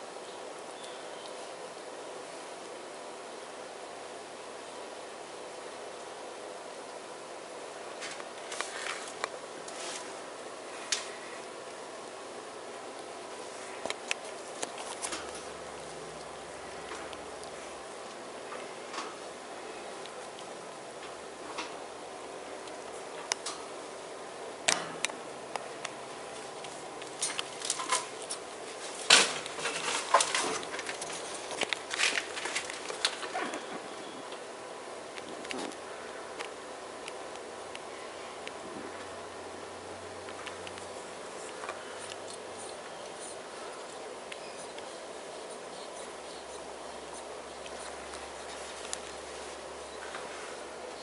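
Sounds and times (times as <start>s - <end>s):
steady background hiss: 0.0s - 51.0s
ferrets scrabbling: 26.3s - 34.0s, 40.2s - 51.0s
sharp clicks and scratches: 40.3s - 49.3s.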